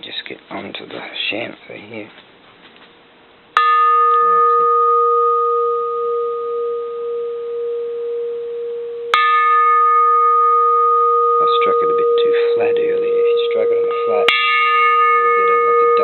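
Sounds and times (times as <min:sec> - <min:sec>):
temple bell ringing: 0:03.6 - 0:16.0.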